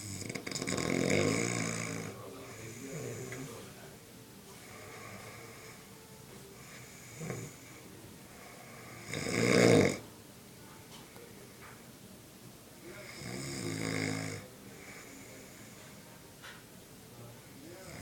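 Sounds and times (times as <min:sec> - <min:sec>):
person snoring loudly: 0:00.0 - 0:03.3, 0:08.6 - 0:10.0, 0:13.1 - 0:14.4
soft breathing: 0:02.1 - 0:09.1, 0:10.7 - 0:11.9, 0:14.4 - 0:17.8.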